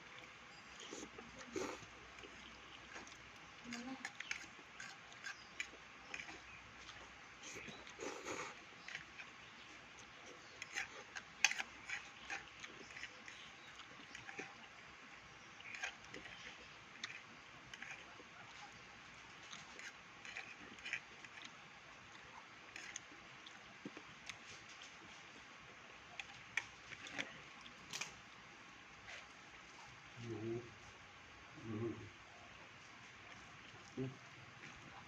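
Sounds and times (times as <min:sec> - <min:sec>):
person chewing and lip-smacking: 0:00.1 - 0:14.7, 0:15.6 - 0:24.5.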